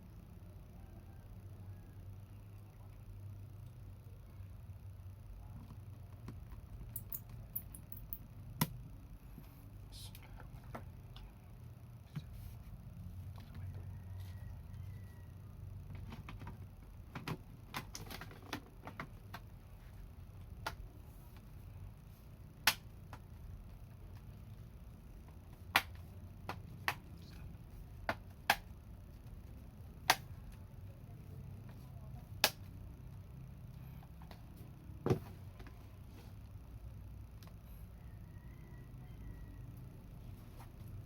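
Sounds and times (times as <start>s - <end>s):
low steady hum: 0.0s - 41.0s
small parts clicking and tapping: 5.6s - 8.8s.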